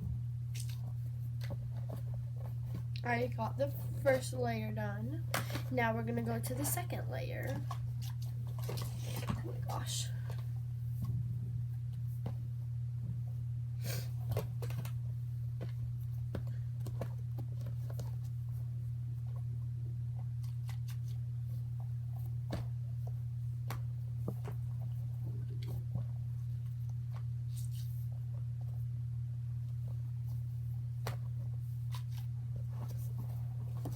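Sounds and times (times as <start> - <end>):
steady low hum: 0.0 - 33.9.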